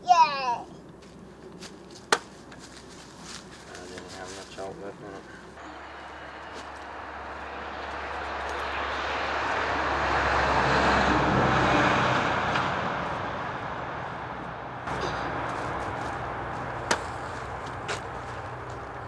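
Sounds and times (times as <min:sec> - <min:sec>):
engine passing by: 0:05.6 - 0:19.0.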